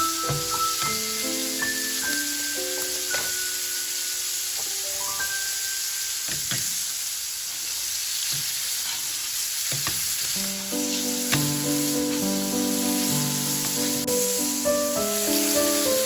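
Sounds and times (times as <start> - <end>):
food sizzling in a frying pan: 0.0 - 16.0
soft background music: 10.4 - 16.0.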